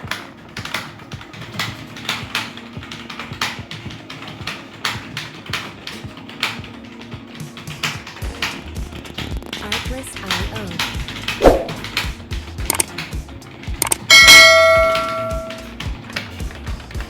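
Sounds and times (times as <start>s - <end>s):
keyboard key clicks: 9.5s - 13.2s, 13.8s - 15.6s.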